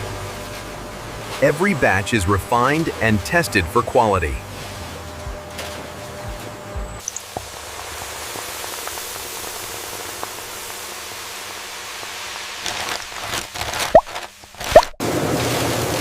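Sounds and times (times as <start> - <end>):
steady rain-like hiss: 7.1 - 14.4.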